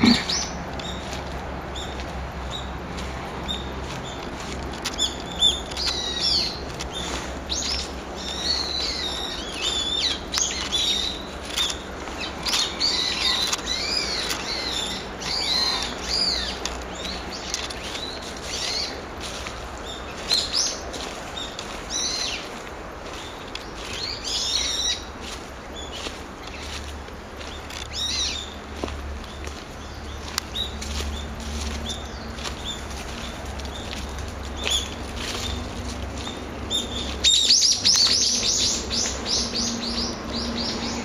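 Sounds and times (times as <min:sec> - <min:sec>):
bird shrill high calls: 0:36.7 - 0:41.0.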